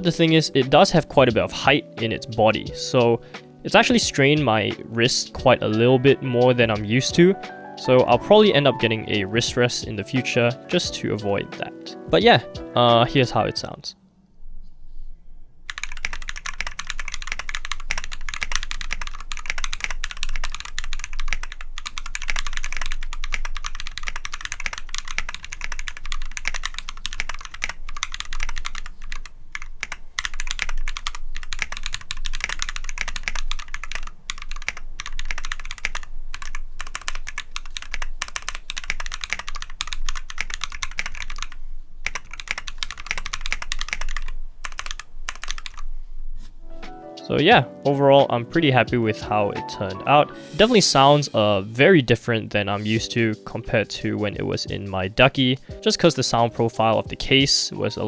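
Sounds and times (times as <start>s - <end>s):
mechanical keyboard typing: 15.7s - 45.8s.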